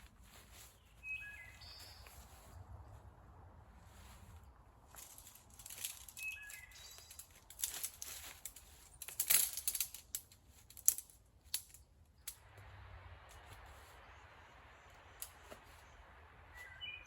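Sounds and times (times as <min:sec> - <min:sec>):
rustling: 0:00.0 - 0:03.0, 0:03.8 - 0:12.6
high chirps: 0:05.9 - 0:07.5, 0:12.4 - 0:17.0.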